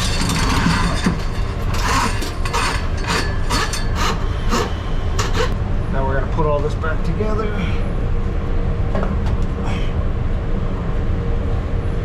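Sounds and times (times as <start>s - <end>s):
scraping and rubbing strokes: 0.0s - 5.6s
low motor hum: 0.0s - 7.2s.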